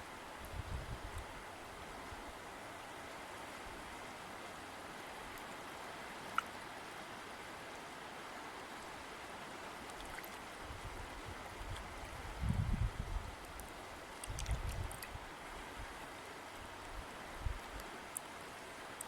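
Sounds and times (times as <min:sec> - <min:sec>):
river water rushing: 0:01.3 - 0:12.4, 0:13.3 - 0:19.0.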